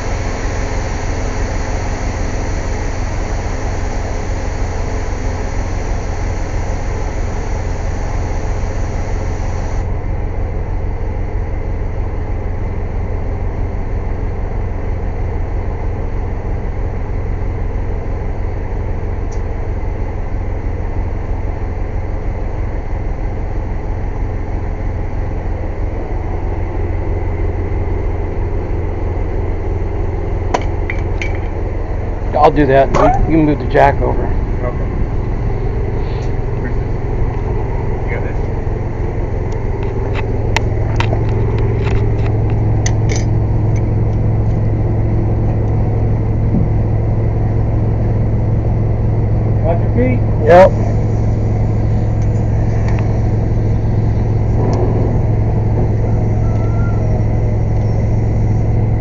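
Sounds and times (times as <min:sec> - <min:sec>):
high hiss: 0:00.0 - 0:09.9
air compressor droning: 0:00.0 - 0:59.0.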